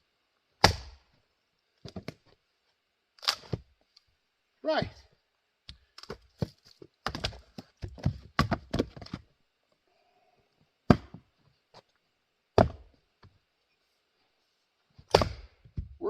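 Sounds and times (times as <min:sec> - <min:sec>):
axe striking wood: 0:00.6 - 0:01.0, 0:07.0 - 0:09.1, 0:10.9 - 0:11.2, 0:12.6 - 0:12.9, 0:15.1 - 0:16.0.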